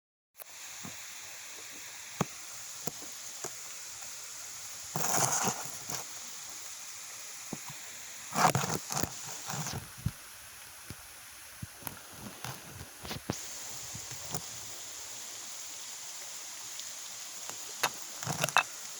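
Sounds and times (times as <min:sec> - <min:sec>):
steady rain hiss: 0:00.4 - 0:18.9.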